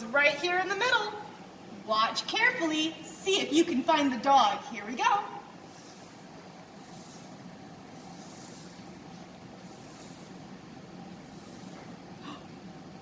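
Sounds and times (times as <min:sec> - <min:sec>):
faint background hum and hiss: 0:00.0 - 0:13.0.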